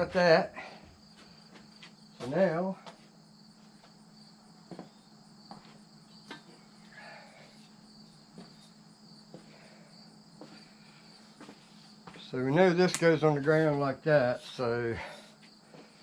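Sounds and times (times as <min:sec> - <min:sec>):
insect trill: 0:00.0 - 0:16.0.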